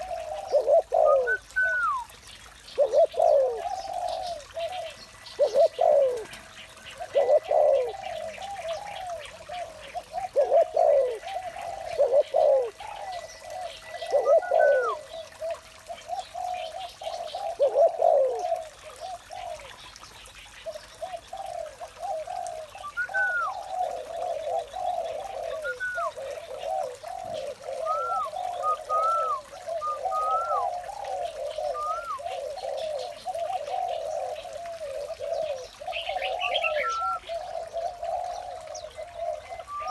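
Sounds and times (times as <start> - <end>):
doves cooing: 0.0 - 2.1, 2.7 - 19.8, 20.6 - 39.9.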